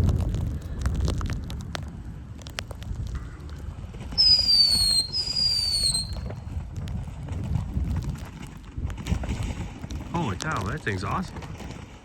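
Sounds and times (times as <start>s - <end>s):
crackling pops: 0.0s - 9.2s, 9.8s - 11.5s
wind rumble on microphone: 0.0s - 12.0s
firework falling whistles: 4.2s - 6.3s.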